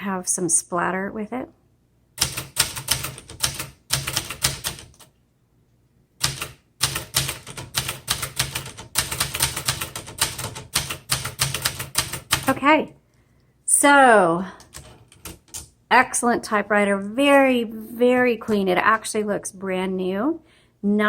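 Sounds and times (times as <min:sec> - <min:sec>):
typewriter typing: 0:02.2 - 0:05.1, 0:06.2 - 0:12.6, 0:14.6 - 0:15.7.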